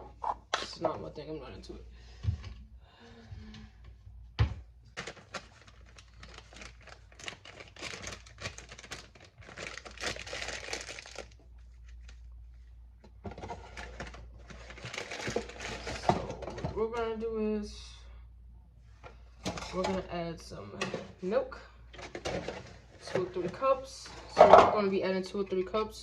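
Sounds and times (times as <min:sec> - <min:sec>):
small clicks and crinkling: 0:05.0 - 0:12.3.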